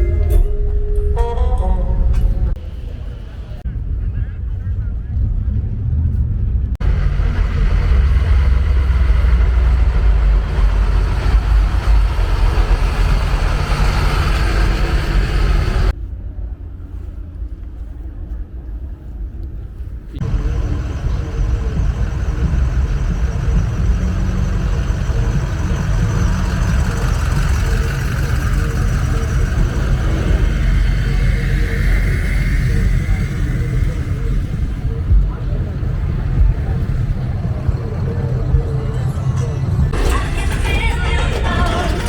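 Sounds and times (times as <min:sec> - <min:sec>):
vehicle engines rumbling: 0:00.0 - 0:42.0.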